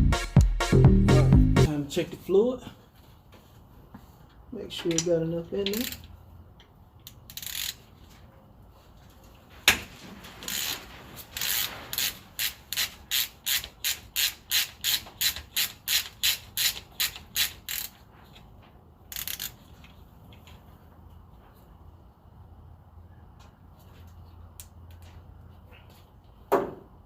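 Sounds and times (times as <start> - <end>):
ratchet wrench clicking: 4.9 - 7.9, 10.5 - 10.7, 11.4 - 18.0, 19.1 - 20.0.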